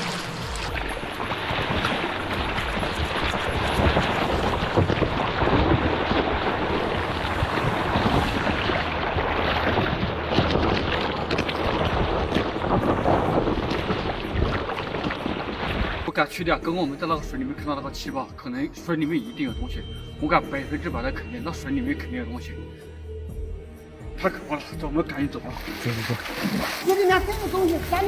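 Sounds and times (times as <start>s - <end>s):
water splashing and churning: 0.0s - 18.0s, 24.2s - 28.0s.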